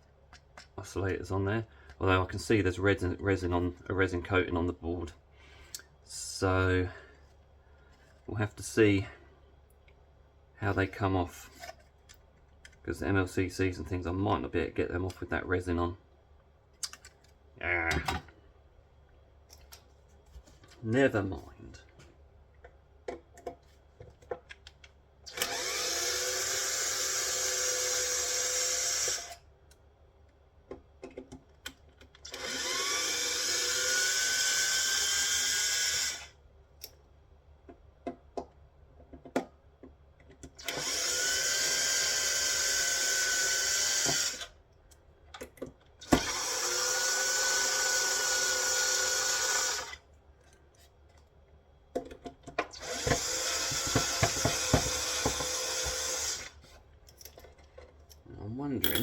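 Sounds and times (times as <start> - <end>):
power drill motor whining: 25.3 - 29.4, 32.2 - 36.3, 40.6 - 44.5, 46.0 - 50.0, 52.7 - 56.6.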